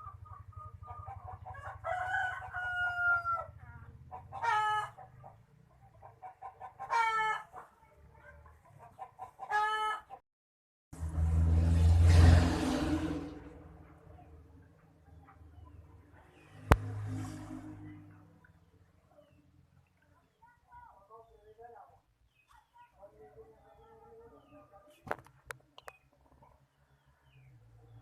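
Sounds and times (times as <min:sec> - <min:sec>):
chickens calling: 0:00.0 - 0:07.8, 0:08.4 - 0:10.2.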